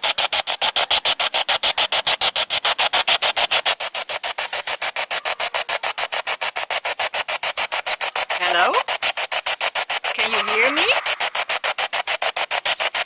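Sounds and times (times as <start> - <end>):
pulsing radio static: 8.4 - 8.9, 10.1 - 12.3.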